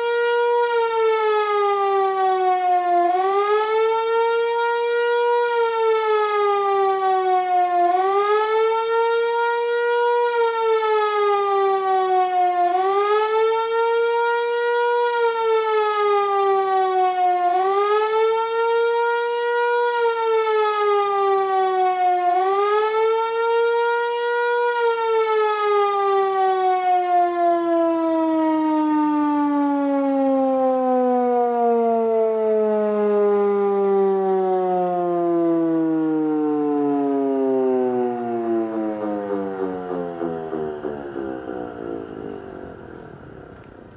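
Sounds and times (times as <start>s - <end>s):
civil defence siren wailing: 0.0s - 43.9s.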